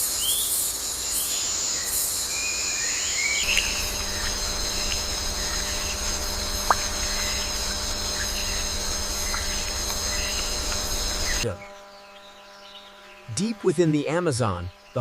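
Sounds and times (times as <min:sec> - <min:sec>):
high-pitched insect drone: 0:00.0 - 0:14.0
faint chirps: 0:01.2 - 0:12.0.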